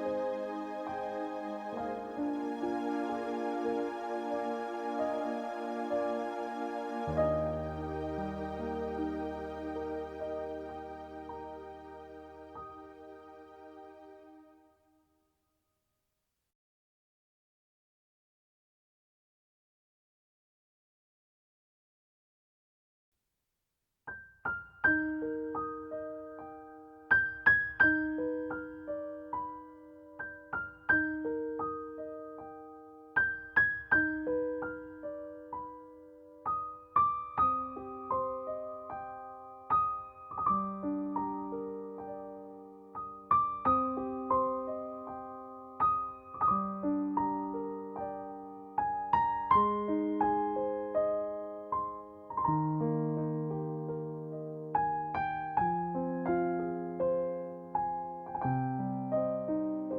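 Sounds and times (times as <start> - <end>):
solo piano melody: 0.0 - 14.7, 24.1 - 59.9.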